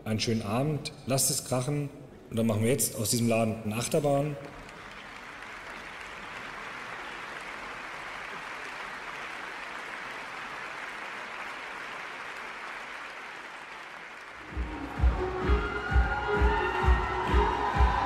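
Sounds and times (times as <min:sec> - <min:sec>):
audience applauding: 0:04.4 - 0:18.0.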